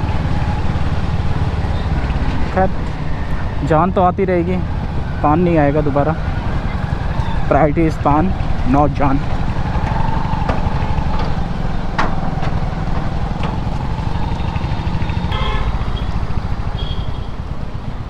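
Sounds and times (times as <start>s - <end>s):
motorcycle engine running: 0.0s - 18.0s
vehicle horn: 14.0s - 17.6s.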